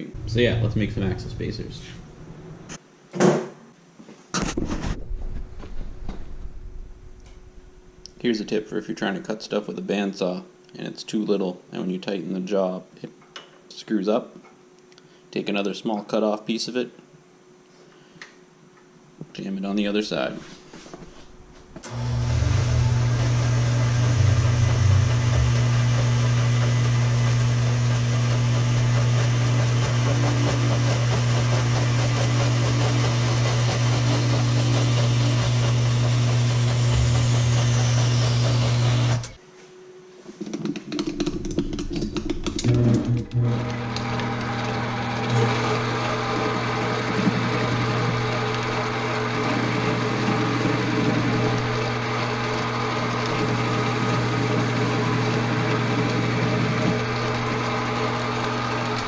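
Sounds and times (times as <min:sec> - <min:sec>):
machine running steadily: 0:00.0 - 0:02.7
metal-cutting bandsaw running: 0:21.8 - 0:39.4, 0:42.6 - 0:59.0
knocks and clatter: 0:40.4 - 0:43.3.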